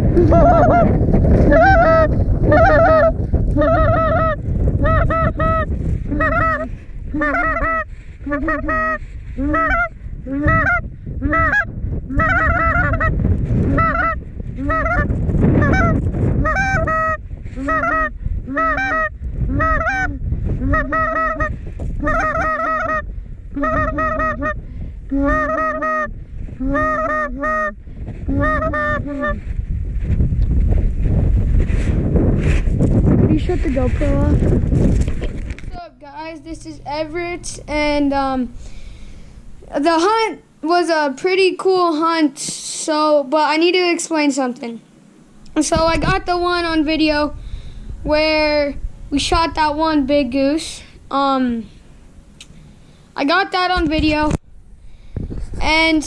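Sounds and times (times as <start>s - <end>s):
wind buffeting microphone: 0.0s - 41.0s, 45.0s - 56.0s
goose honking: 10.5s - 13.1s, 13.7s - 20.1s, 20.7s - 23.0s, 23.6s - 24.6s, 26.7s - 27.7s.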